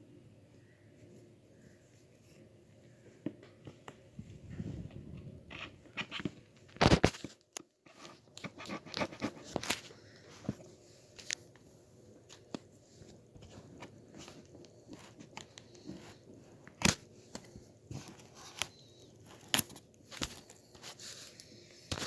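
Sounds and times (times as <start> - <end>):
packaging crinkling and rustling: 4.9 - 11.5, 13.4 - 22.0.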